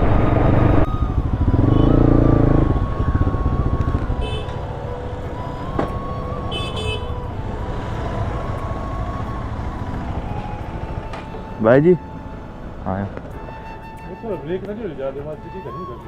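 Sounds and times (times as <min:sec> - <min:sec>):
motorcycle engine and road noise: 0:00.0 - 0:15.4
vehicle horn toots: 0:04.1 - 0:04.7, 0:06.4 - 0:07.3.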